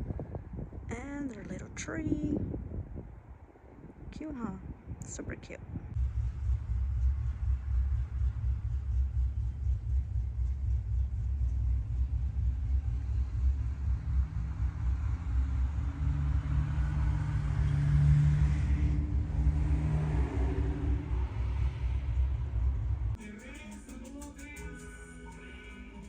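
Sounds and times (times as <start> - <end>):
low constant rumble: 0.0 - 26.0
car engine hum: 5.9 - 23.7.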